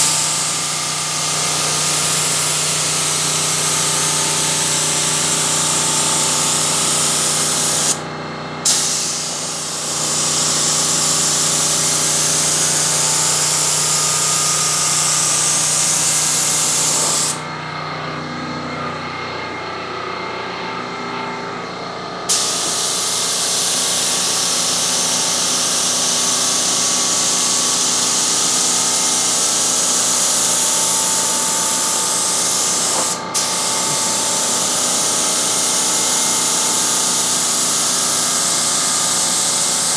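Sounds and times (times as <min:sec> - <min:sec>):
spray gun hissing: 0:00.0 - 0:08.0, 0:08.6 - 0:17.4, 0:22.3 - 0:39.9.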